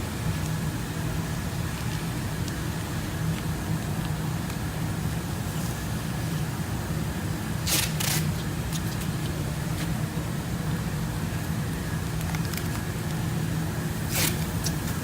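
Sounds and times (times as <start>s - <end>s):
low machine hum: 0.0s - 15.0s
masking tape rasps: 7.6s - 9.9s, 14.0s - 15.0s.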